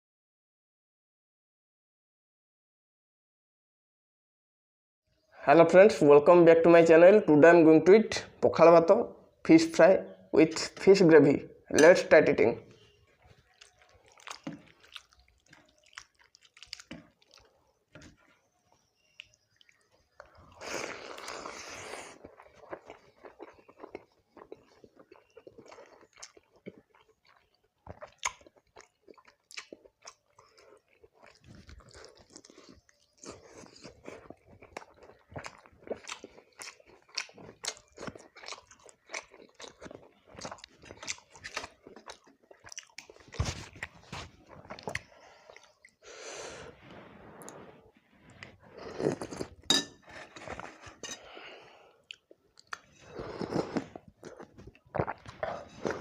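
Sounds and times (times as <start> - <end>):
wet chewing: 13.0 - 46.2, 47.4 - 56.0.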